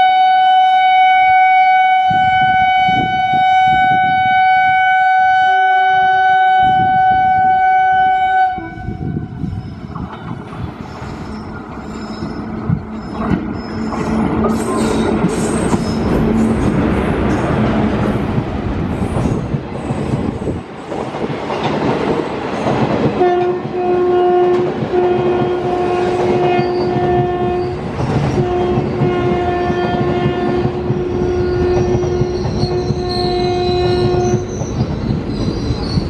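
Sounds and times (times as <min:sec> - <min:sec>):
locomotive horn blasts: 0:00.0 - 0:09.4, 0:23.2 - 0:27.8, 0:28.4 - 0:34.4
train rumble and rail clatter: 0:00.0 - 0:36.0.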